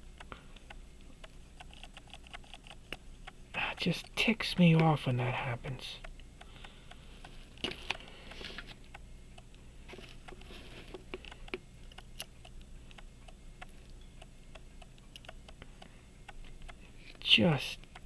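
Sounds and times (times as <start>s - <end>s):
hand tools clicking on watch: 0.1s - 4.2s, 10.2s - 16.8s
soft rustles: 9.9s - 11.2s.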